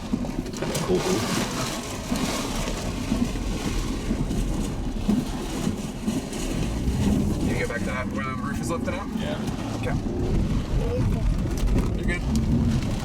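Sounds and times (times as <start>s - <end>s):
rain on vehicle: 0.0s - 13.0s
vehicle road and engine rumble: 0.0s - 13.0s
gusting wind: 2.7s - 13.0s.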